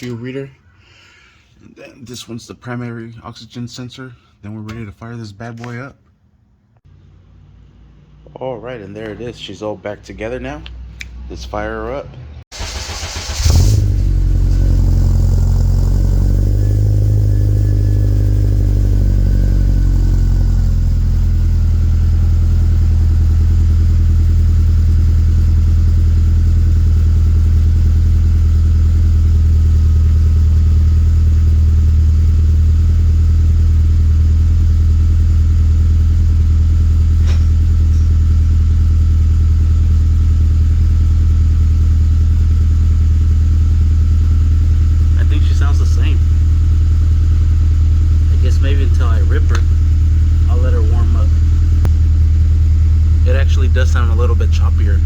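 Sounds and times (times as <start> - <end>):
car engine starting and idling: 12.5 - 55.0.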